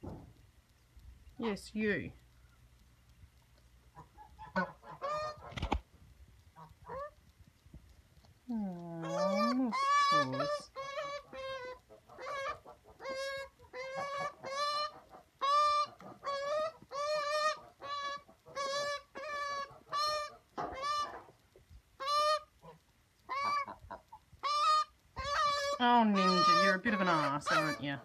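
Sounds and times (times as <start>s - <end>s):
magpie squawking: 9.1s - 21.2s, 24.4s - 28.0s.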